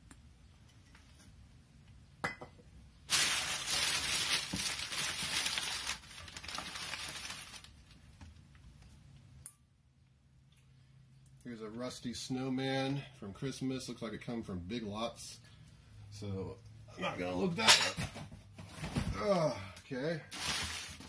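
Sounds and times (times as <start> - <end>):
wrapping crinkling rustle: 3.1 - 8.2, 20.3 - 21.0.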